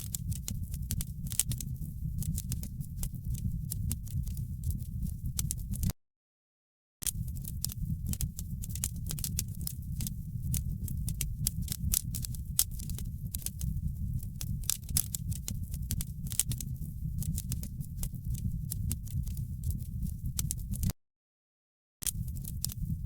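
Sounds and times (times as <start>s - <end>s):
fire low rumble: 0.0s - 5.9s, 7.2s - 20.9s, 22.2s - 23.0s
wood fire crackling and popping: 0.0s - 5.9s, 7.0s - 20.9s, 22.1s - 23.0s.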